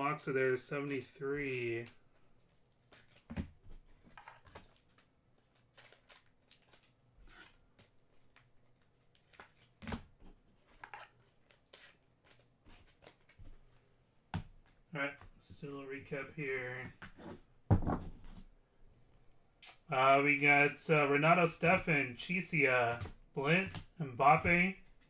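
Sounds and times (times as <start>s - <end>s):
trading cards tapping and rustling: 0.3s - 13.6s, 21.7s - 25.0s.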